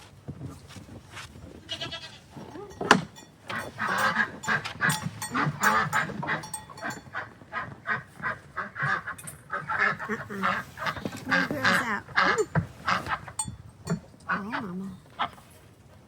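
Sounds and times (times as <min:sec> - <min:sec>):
ducks quacking: 0:03.5 - 0:15.4.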